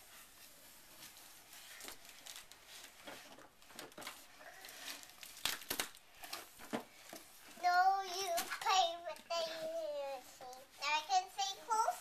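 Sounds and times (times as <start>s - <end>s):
cardboard crinkling and tearing: 1.0s - 7.2s.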